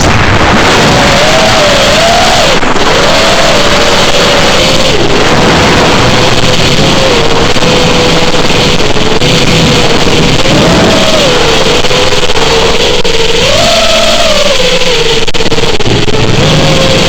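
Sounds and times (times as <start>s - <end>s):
drone motors whining: 0.0s - 17.0s
propeller and wind rushing: 0.0s - 17.0s.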